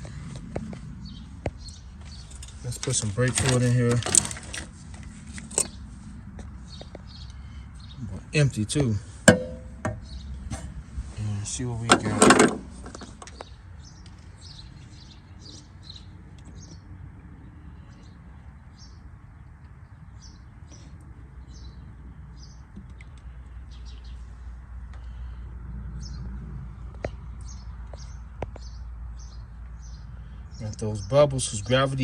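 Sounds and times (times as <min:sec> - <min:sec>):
small birds chirping: 0:00.0 - 0:11.8, 0:12.7 - 0:32.0
steady low hum: 0:04.2 - 0:19.4.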